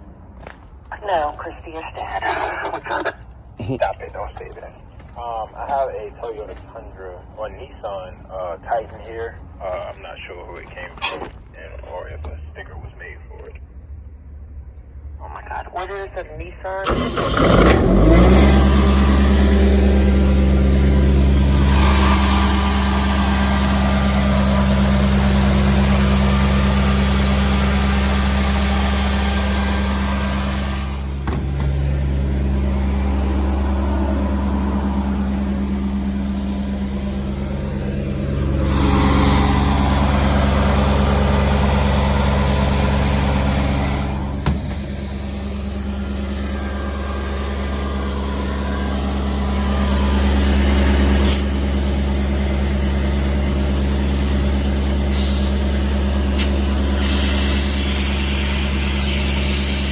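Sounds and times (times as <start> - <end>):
diesel engine running: 0.0 - 59.9
air compressor hiss: 50.6 - 59.9.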